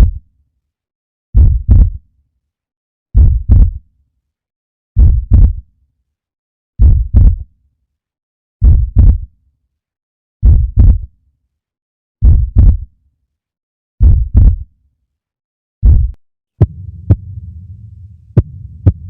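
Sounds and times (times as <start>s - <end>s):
heartbeat thumps: 1.4s - 2.0s, 3.2s - 3.8s, 5.0s - 5.6s, 6.8s - 7.4s, 8.6s - 9.2s, 10.4s - 11.1s, 12.2s - 12.8s, 14.0s - 14.6s, 15.8s - 19.0s.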